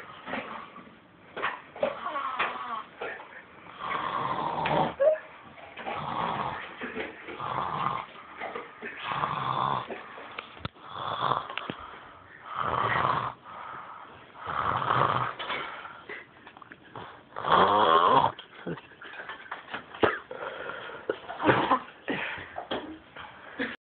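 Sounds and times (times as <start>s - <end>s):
person snoring: 3.7s - 5.0s, 6.0s - 6.6s, 7.4s - 8.1s, 9.0s - 10.0s, 10.8s - 11.8s, 12.4s - 13.6s, 14.4s - 15.4s, 17.0s - 18.4s.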